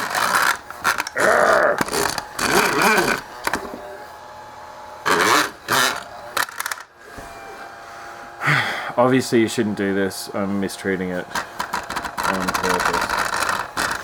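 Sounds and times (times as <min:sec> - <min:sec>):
stepper motors whining: 0:00.0 - 0:07.7, 0:09.0 - 0:14.0
low fan hum: 0:00.0 - 0:12.9.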